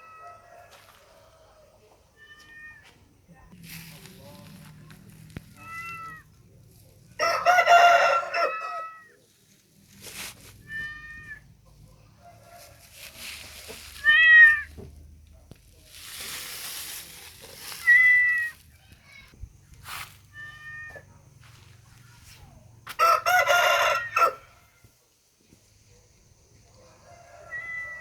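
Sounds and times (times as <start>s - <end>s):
cat meowing: 2.2s - 2.9s, 5.5s - 6.4s, 10.6s - 11.5s, 14.0s - 14.8s, 20.3s - 21.1s, 27.5s - 28.0s
soft hissing noise: 12.6s - 20.3s.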